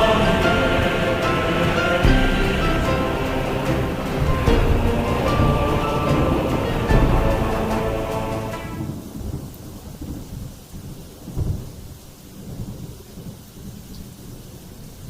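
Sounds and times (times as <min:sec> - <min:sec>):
background music: 0:00.0 - 0:09.1
thunder rumbling: 0:00.0 - 0:13.8.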